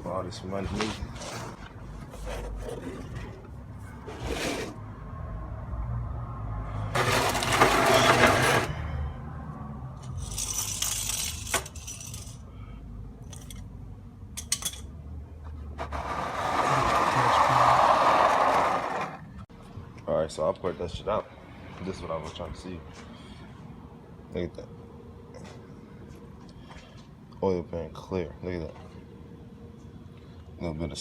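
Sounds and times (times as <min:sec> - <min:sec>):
scraping rush: 0:06.8 - 0:09.0, 0:15.8 - 0:19.3
metallic clinks and clatters: 0:10.0 - 0:12.4.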